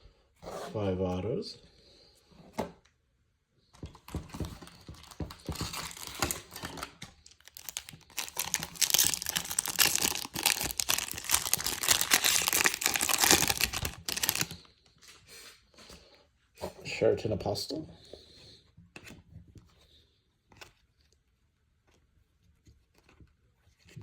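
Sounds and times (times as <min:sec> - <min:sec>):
foil wrapper tearing and crinkling: 0:04.8 - 0:14.6.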